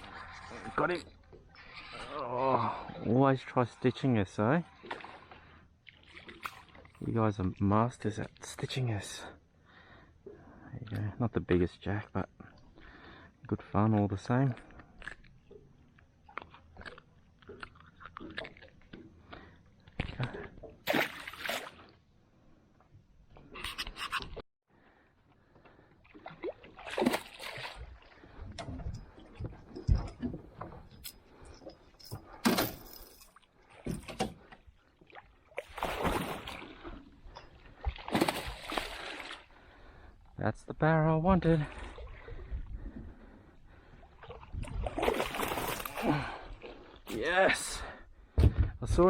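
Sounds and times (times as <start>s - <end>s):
water splashing: 20.8s - 21.8s, 26.0s - 28.4s, 35.0s - 37.1s, 37.7s - 39.5s, 44.2s - 47.0s.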